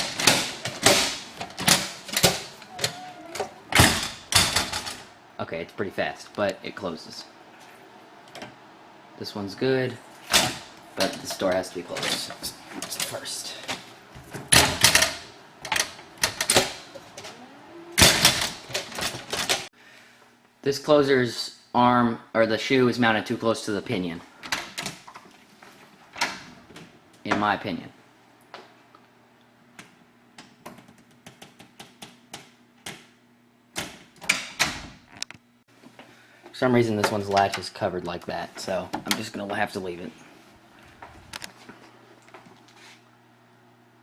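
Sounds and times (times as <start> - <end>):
faint rising door creak: 2.2 - 3.9.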